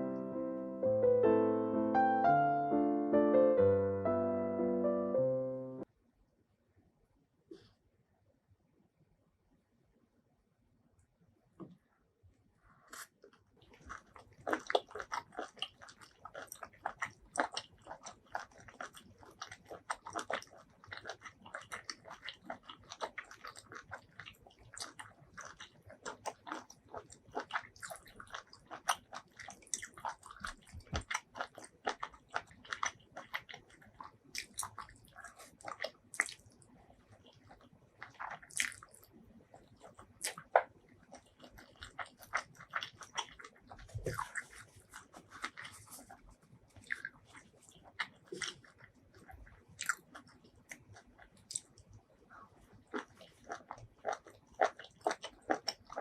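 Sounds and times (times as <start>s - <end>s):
person chewing and biting food: 12.9s - 51.9s, 52.6s - 56.0s.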